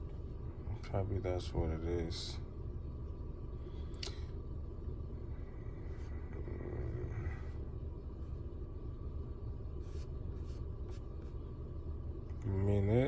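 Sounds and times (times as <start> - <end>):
air conditioning running: 0.0 - 13.0.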